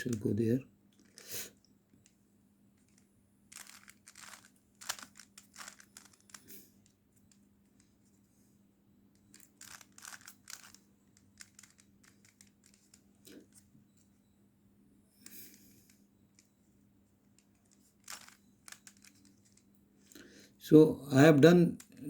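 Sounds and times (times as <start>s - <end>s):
plastic puzzle cube clicking: 2.8s - 7.9s, 9.2s - 13.1s, 17.4s - 19.7s.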